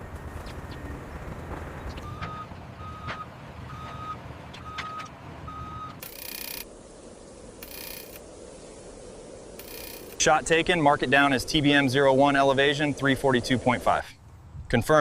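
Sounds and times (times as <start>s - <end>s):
low engine rumble: 0.0s - 6.1s
reversing alarm beeps: 2.0s - 6.6s.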